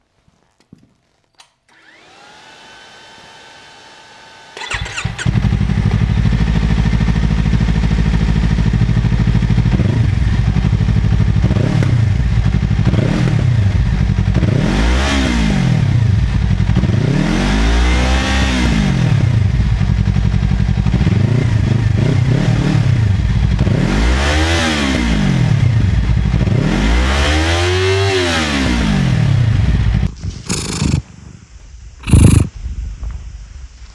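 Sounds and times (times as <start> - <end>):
motorcycle engine revving: 4.6 - 16.0, 30.5 - 31.0, 32.0 - 32.5.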